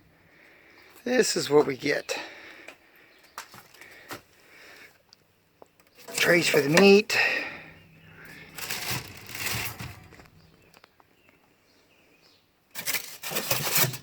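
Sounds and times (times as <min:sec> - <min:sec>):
packaging rustling: 0:08.3 - 0:10.4.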